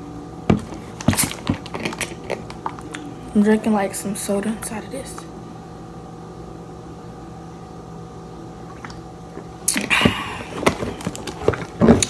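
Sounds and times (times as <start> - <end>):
low room hum: 0.0 - 12.0
sipping from a cup: 8.7 - 12.0.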